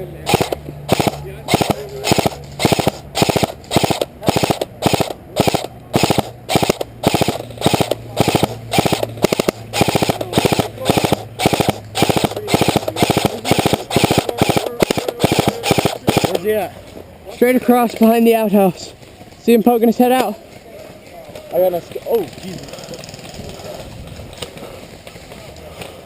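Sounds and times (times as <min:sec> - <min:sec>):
airsoft gun firing bursts: 0:00.3 - 0:16.4.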